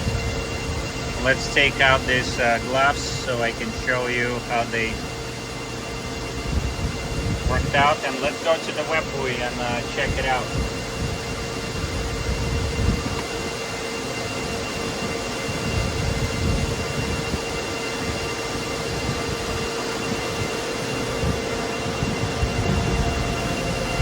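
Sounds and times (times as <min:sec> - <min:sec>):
rushing noise: 0:00.0 - 0:11.2
high whine: 0:00.0 - 0:24.0
machinery low hum: 0:00.0 - 0:24.0.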